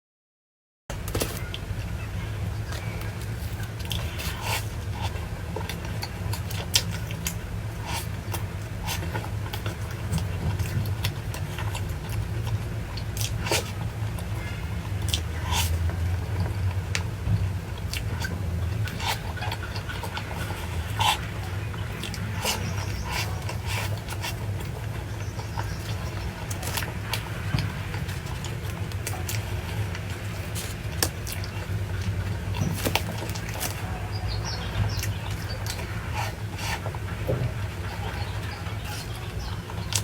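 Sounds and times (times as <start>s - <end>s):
chewing crunches: 1.1s - 40.0s.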